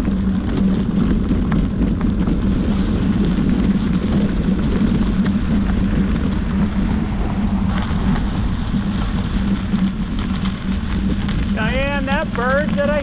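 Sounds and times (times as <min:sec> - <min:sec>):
low hum and rumble: 0:00.0 - 0:13.0
wind rushing on microphone: 0:00.0 - 0:13.0.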